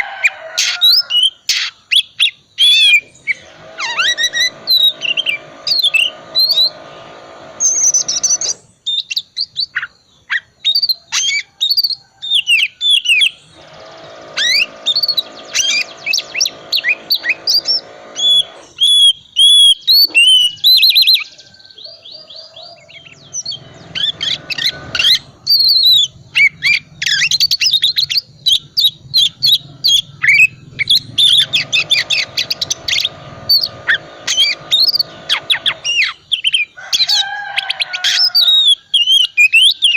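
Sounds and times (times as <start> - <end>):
steady buzzing drone: 2.9 - 8.6, 13.5 - 18.8, 22.9 - 36.2.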